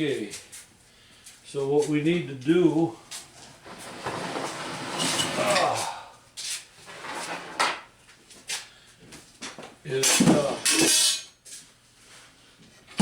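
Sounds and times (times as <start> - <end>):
scraping rubbing sound: 3.5 - 5.6.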